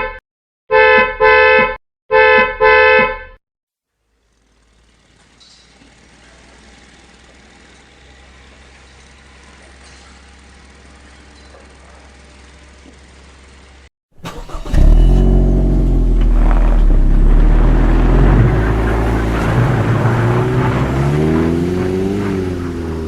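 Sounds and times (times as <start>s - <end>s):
street ambience with low hum: 4.0s - 13.9s, 14.5s - 23.0s
vehicle engine running loudly: 4.2s - 13.9s, 14.8s - 23.0s.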